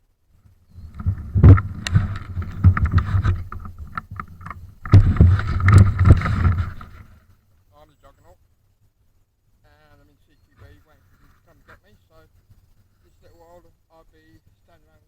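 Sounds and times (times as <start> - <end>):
rubbing on microphone: 0.7 - 7.2
sharp knocks: 0.8 - 7.0.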